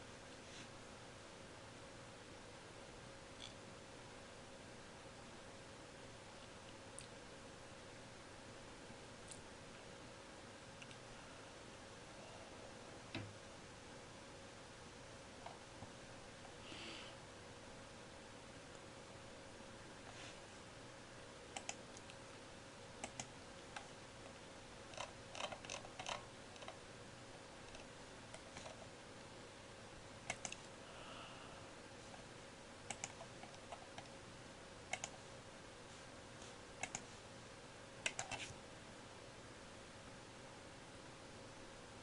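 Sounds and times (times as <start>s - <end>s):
faint steady hum: 0.0s - 42.0s
faint clicks: 21.6s - 22.2s, 30.3s - 30.7s, 32.9s - 34.1s, 34.9s - 35.2s.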